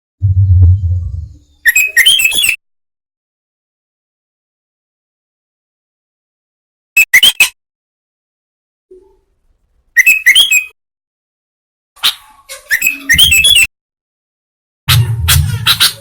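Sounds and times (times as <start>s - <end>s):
low rumble: 0.2s - 1.4s.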